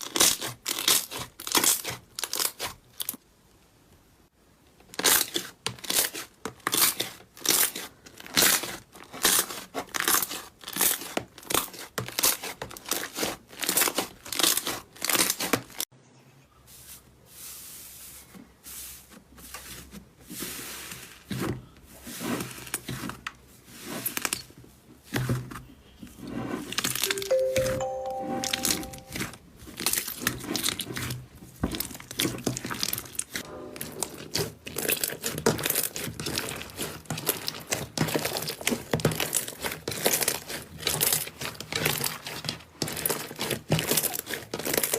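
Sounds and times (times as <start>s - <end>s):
slime squishing: 0.0s - 3.2s, 4.8s - 15.8s, 29.6s - 33.4s, 34.0s - 44.9s.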